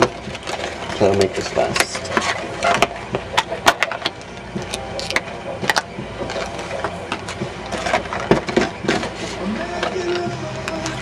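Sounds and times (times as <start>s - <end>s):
foil packs crinkling: 0.0s - 2.6s
steady low hum: 0.0s - 11.0s.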